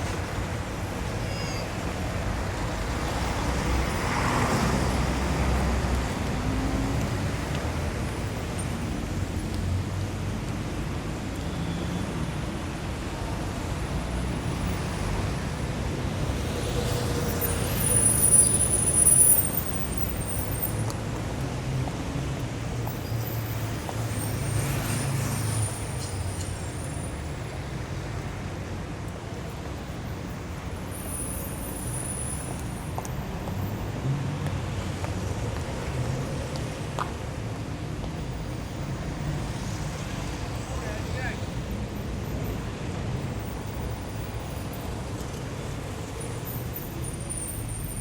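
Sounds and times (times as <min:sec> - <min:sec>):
traffic rumble: 0:00.0 - 0:48.0
high squeals: 0:01.2 - 0:01.8.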